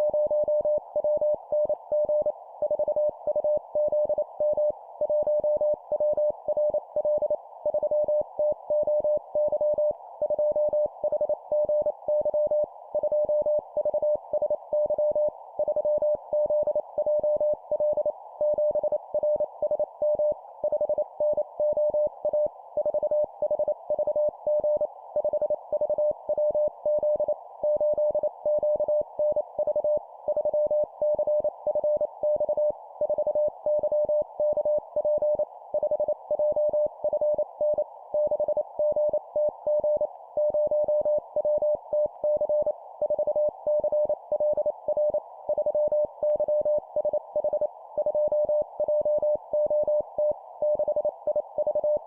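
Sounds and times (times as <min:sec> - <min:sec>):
morse code beeps: 0:00.0 - 0:52.0.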